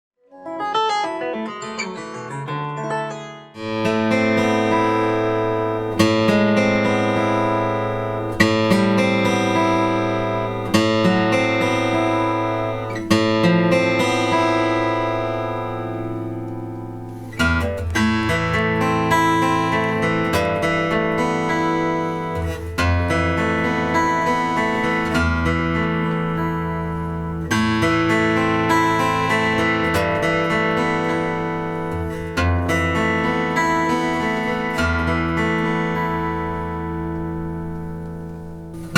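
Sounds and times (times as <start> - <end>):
acoustic guitar playing: 0.3 - 38.9.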